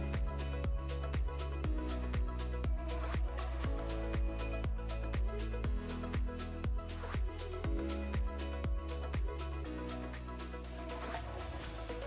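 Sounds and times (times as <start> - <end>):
electronic music: 0.0 - 12.0
kick drum beat: 0.2 - 9.4.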